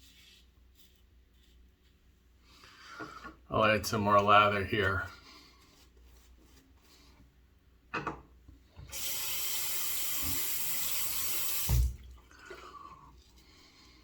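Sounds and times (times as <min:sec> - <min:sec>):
bathroom tap running water: 0:08.8 - 0:13.4.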